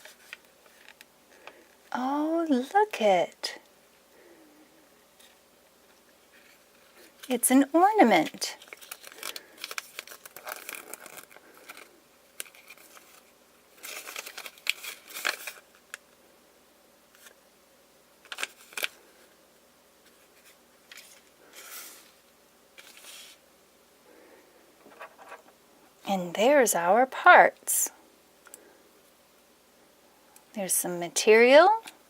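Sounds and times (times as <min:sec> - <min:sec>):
wrapper rustling and crinkling: 0:00.0 - 0:01.9, 0:06.2 - 0:16.0, 0:18.2 - 0:19.3, 0:20.0 - 0:23.4.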